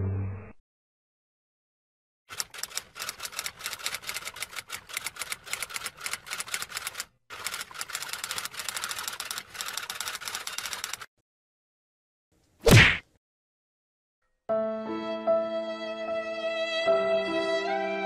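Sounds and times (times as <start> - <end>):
rapid typing key clicks: 2.3 - 11.1.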